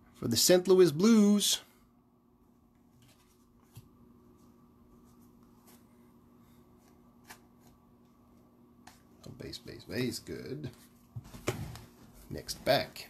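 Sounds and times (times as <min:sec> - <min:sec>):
low steady hum: 0:00.0 - 0:13.0
handling of trading cards: 0:06.6 - 0:08.2.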